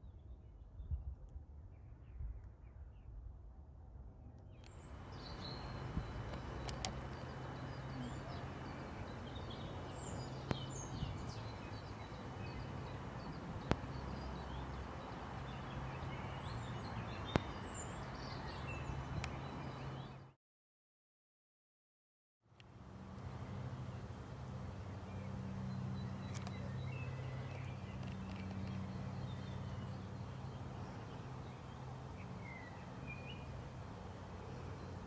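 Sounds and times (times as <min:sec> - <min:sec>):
songbirds chirping and whistling: 0:04.5 - 0:20.3, 0:23.7 - 0:35.0
sharp clicks: 0:06.2 - 0:07.3.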